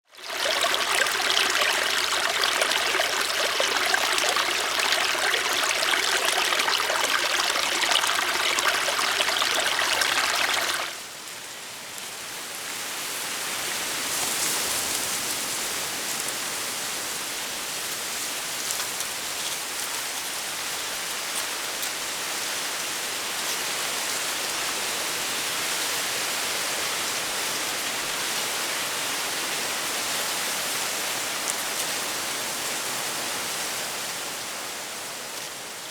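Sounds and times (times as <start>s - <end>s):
creek babbling and gurgling: 0.0s - 11.0s.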